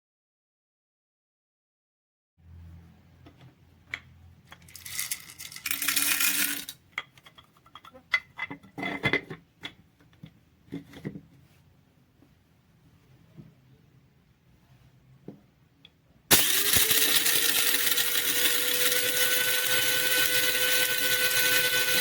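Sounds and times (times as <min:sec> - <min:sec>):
hard objects clicking and clattering: 0:03.9 - 0:11.2.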